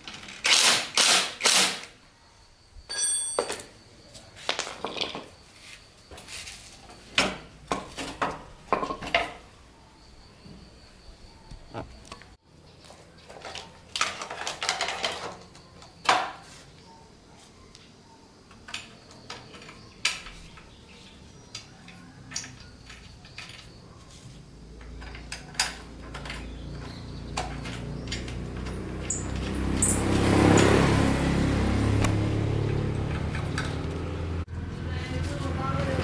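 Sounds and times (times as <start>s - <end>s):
metal tools clinking and knocking: 2.9s - 3.8s, 4.4s - 5.4s, 24.8s - 30.8s.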